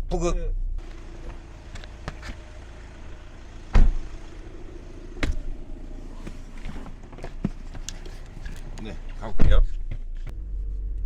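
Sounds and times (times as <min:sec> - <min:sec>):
road and engine rumble: 0:00.0 - 0:11.0
interior trim rattling: 0:00.8 - 0:10.3.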